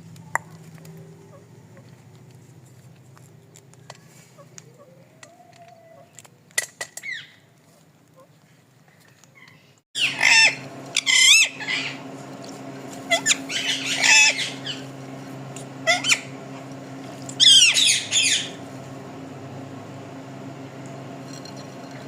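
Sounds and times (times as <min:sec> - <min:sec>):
parrot squawking: 0:10.0 - 0:12.0, 0:13.1 - 0:14.9, 0:15.8 - 0:16.4, 0:17.4 - 0:18.6
low hum: 0:10.0 - 0:22.0.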